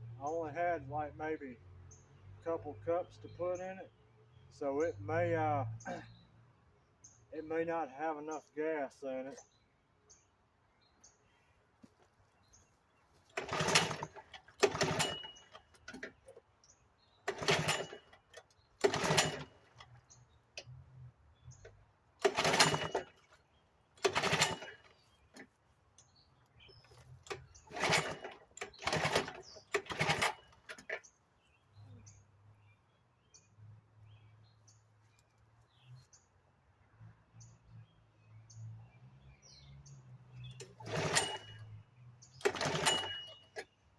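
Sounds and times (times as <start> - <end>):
recoil starter cord rasp: 13.3 - 16.4, 17.3 - 20.0, 22.2 - 23.4, 24.0 - 25.5, 26.8 - 31.0, 40.6 - 41.7, 42.4 - 43.7
outboard engine sputtering and idling: 13.4 - 15.7, 18.8 - 19.5, 22.2 - 23.3, 24.0 - 24.9, 27.2 - 31.0, 40.7 - 41.5, 42.4 - 43.6.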